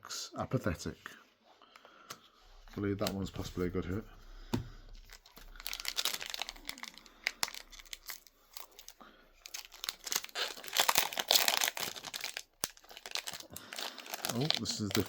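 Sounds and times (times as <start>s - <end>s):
foil wrapper tearing and crinkling: 5.0s - 15.0s.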